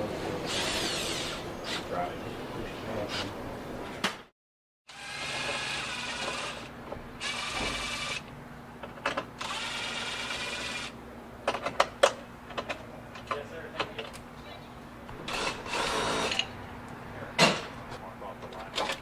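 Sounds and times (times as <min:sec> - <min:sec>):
power drill running: 0:04.9 - 0:08.2, 0:09.4 - 0:11.0, 0:15.3 - 0:16.5.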